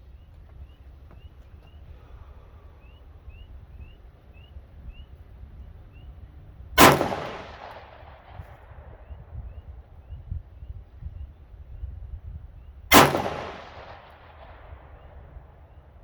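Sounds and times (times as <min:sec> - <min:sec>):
wind rumbling on microphone: 0:00.0 - 0:16.0
pistol shot with echo: 0:06.8 - 0:09.3, 0:12.9 - 0:15.8.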